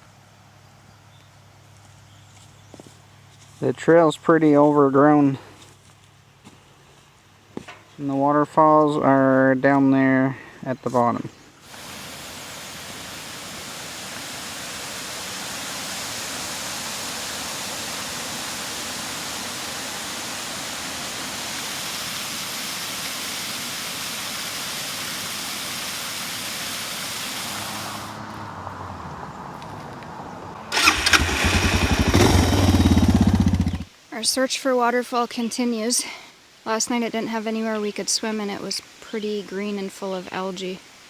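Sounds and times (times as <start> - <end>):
waterfall rushing: 11.7 - 28.2, 30.7 - 33.9
motorcycle engine thumping: 30.8 - 33.9.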